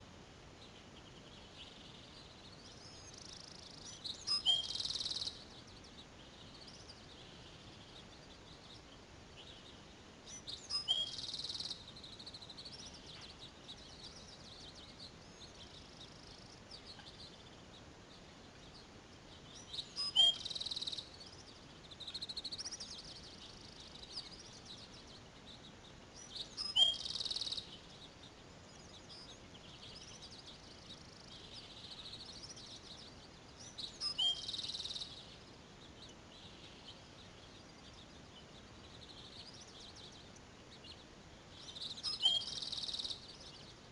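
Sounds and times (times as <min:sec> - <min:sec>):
small birds singing: 0:00.0 - 0:43.9
steady hiss: 0:00.0 - 0:43.9.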